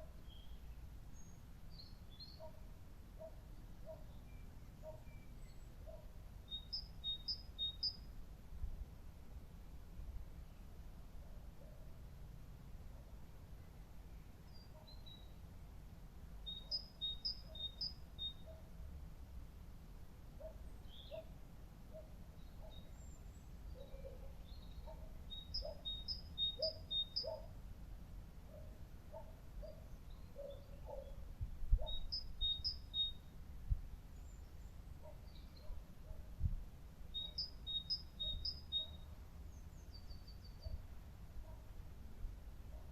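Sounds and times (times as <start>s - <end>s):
small birds chirping: 0.0s - 2.7s, 3.3s - 8.1s, 13.6s - 15.4s, 16.4s - 18.7s, 20.4s - 21.4s, 22.0s - 27.6s, 29.2s - 33.3s, 34.1s - 35.9s, 37.1s - 41.6s
songbird chirping and whistling: 6.5s - 8.0s, 16.5s - 18.6s, 23.8s - 27.4s, 31.8s - 33.3s, 37.2s - 39.1s.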